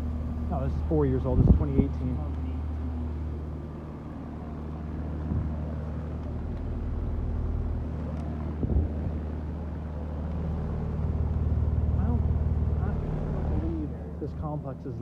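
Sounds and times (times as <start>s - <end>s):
heat pump unit humming: 0.0s - 15.0s
soft bumps: 5.2s - 6.9s, 7.5s - 9.5s.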